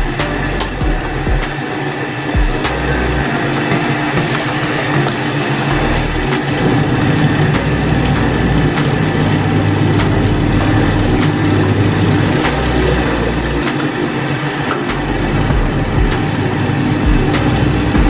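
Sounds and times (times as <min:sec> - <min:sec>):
washing machine humming: 0:00.0 - 0:18.0.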